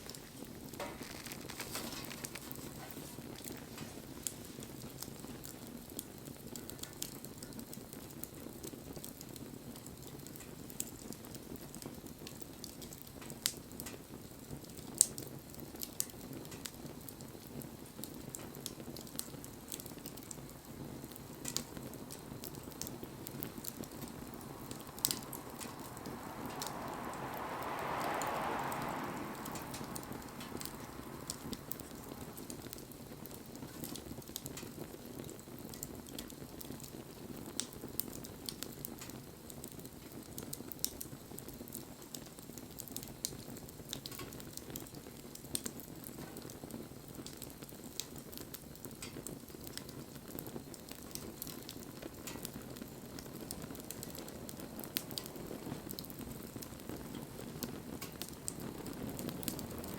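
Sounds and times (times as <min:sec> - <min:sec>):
bonfire crackling: 0:00.0 - 0:59.9.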